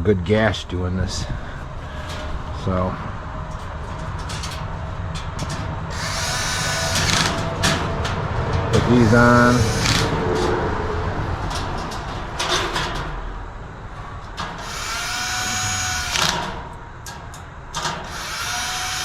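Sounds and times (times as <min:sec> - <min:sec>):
metal panels clanking: 0:01.1 - 0:18.2
cordless drill whirring: 0:05.9 - 0:07.6, 0:09.5 - 0:10.1, 0:14.6 - 0:16.5, 0:18.0 - 0:19.0.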